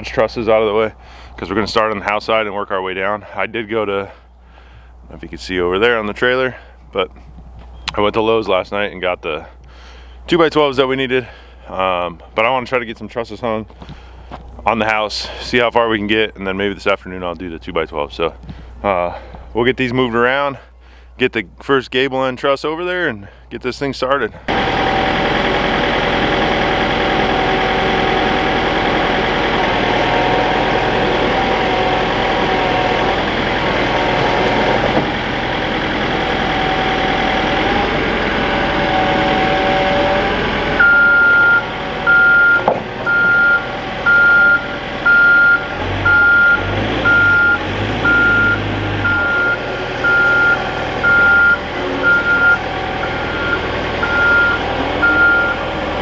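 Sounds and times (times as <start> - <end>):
skid steer engine under load: 0.0 - 19.8, 24.3 - 56.0
backup alarm beeping: 40.8 - 55.7.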